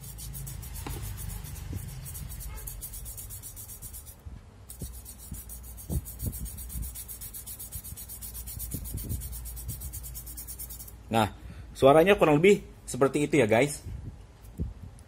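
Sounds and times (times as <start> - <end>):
rapid metallic scraping: 0.0 - 11.0.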